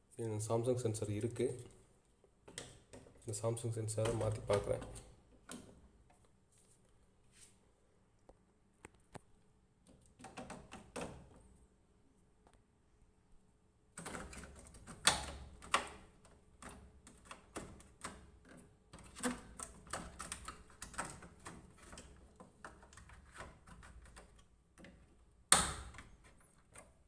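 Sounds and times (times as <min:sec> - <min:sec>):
plastic clicks and rattles: 0:03.9 - 0:06.3, 0:14.0 - 0:27.0.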